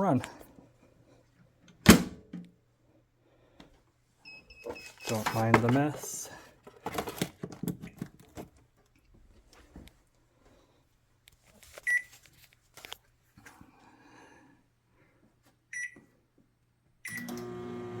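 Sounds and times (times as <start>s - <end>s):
microwave beeps: 15.7s - 16.0s, 17.0s - 18.0s
microwave humming: 17.1s - 18.0s.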